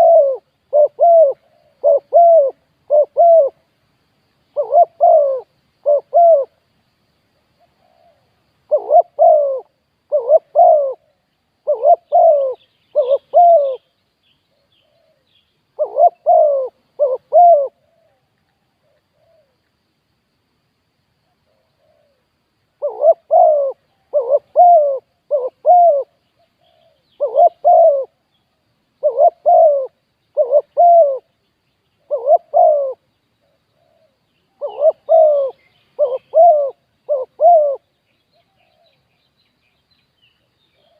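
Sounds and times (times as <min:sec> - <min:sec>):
dove cooing: 0:00.0 - 0:03.6, 0:04.5 - 0:06.6, 0:07.6 - 0:13.9, 0:14.6 - 0:19.6, 0:21.4 - 0:28.3, 0:29.0 - 0:31.4, 0:32.0 - 0:39.2
small birds chirping: 0:04.3 - 0:19.8, 0:21.5 - 0:40.9.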